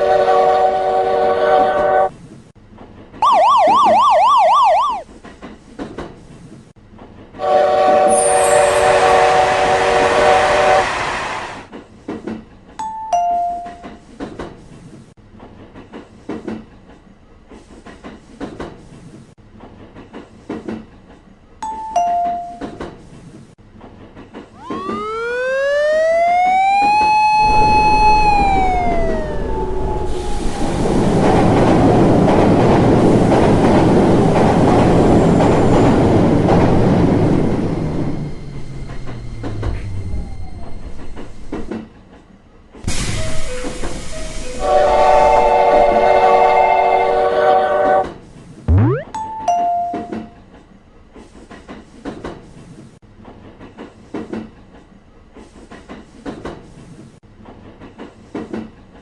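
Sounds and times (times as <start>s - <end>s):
rising and falling tone: 3.2s - 5.0s, 24.6s - 30.6s, 48.7s - 50.1s
warbling siren: 3.2s - 5.0s, 24.6s - 30.9s, 48.7s - 49.4s
passing train rushing: 7.4s - 11.8s, 24.0s - 41.8s
two-note ding-dong chimes: 48.7s - 50.3s.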